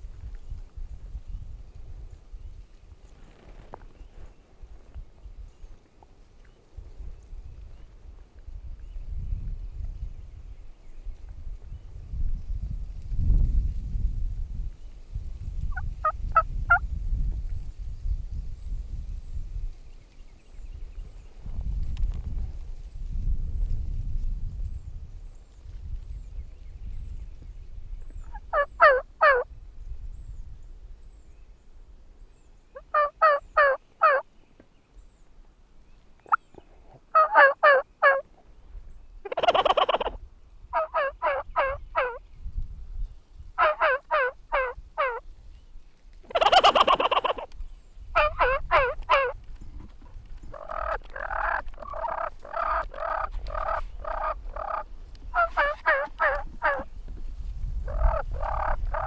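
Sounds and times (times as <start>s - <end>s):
wild turkeys calling: 15.7s - 16.8s, 28.2s - 29.5s, 32.8s - 34.3s, 36.2s - 38.5s, 39.2s - 42.2s, 43.6s - 45.3s, 46.2s - 56.9s, 57.9s - 59.0s.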